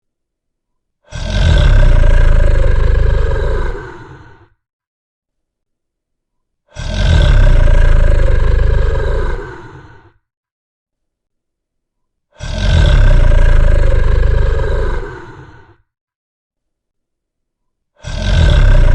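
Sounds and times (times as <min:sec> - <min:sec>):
deep rumbling dragon roar: 0:01.1 - 0:04.5, 0:06.7 - 0:10.2, 0:12.4 - 0:15.8, 0:18.0 - 0:18.9.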